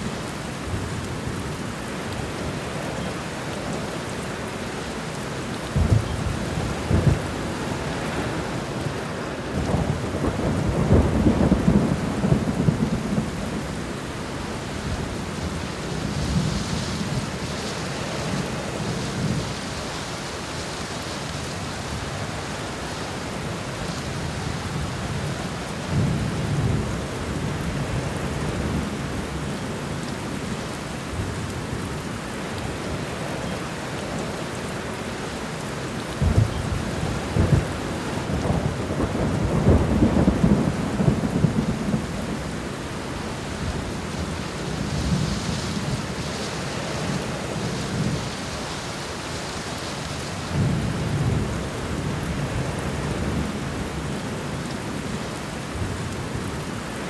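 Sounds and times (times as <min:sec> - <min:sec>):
heavy rain: 0:00.0 - 0:57.0
thunder rumbling: 0:05.7 - 0:19.6, 0:36.2 - 0:42.7.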